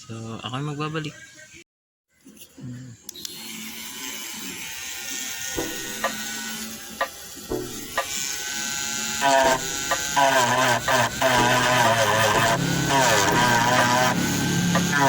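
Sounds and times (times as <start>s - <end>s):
die grinder grinding plastic: 3.2s - 15.0s.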